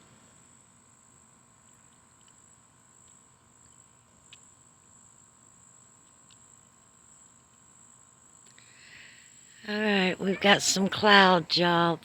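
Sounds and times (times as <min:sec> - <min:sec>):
high-pitched insect chorus: 0:00.0 - 0:11.4
soft ticks: 0:01.6 - 0:04.5, 0:06.0 - 0:06.8.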